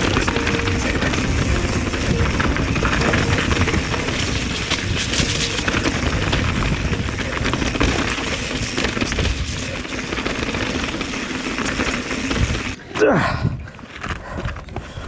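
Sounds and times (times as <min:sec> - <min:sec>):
bike tyres rumbling on dirt: 0:06.2 - 0:12.8.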